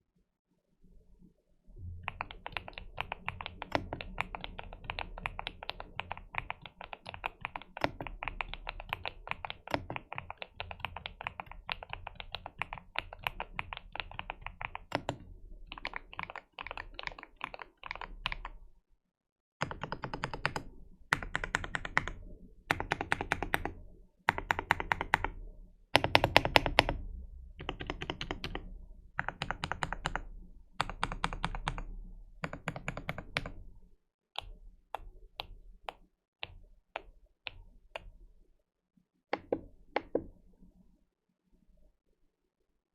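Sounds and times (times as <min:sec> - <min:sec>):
mechanical keyboard typing: 0:02.0 - 0:18.6, 0:19.6 - 0:25.4, 0:26.0 - 0:27.0, 0:27.6 - 0:33.6, 0:39.4 - 0:40.3.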